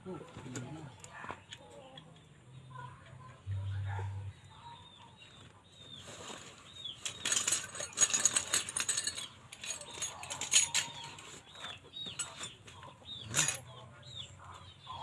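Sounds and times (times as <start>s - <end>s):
metallic clinking and rattling: 7.0s - 11.4s, 12.0s - 13.8s.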